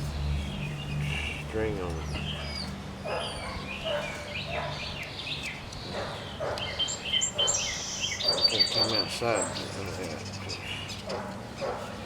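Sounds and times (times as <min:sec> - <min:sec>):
puppy yipping: 0:02.1 - 0:04.8.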